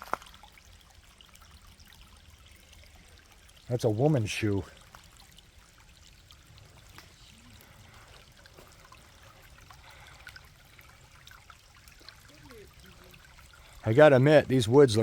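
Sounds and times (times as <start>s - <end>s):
creek water trickling: 0.0s - 15.0s
light ticks: 6.9s - 7.2s.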